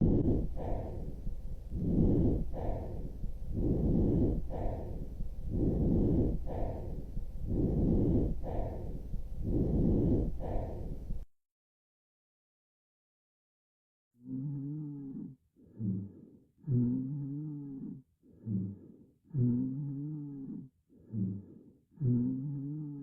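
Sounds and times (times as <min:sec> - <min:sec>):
breathing through a stethoscope: 0:00.0 - 0:11.3, 0:15.1 - 0:23.0.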